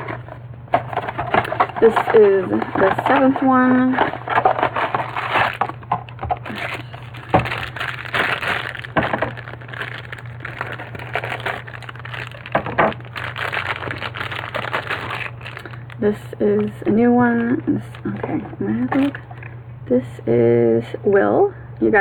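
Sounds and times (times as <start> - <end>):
packaging snapping: 0.0 - 19.5
packaging crinkling: 0.0 - 19.6
cardboard box tearing: 4.1 - 5.8.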